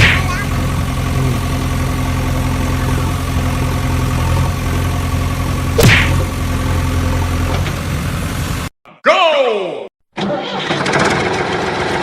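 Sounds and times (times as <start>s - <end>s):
vehicle engine idling: 0.0s - 8.7s.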